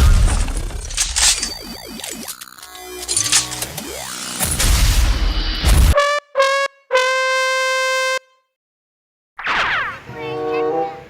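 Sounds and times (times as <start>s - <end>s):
low rumbling crash: 0.0s - 1.1s.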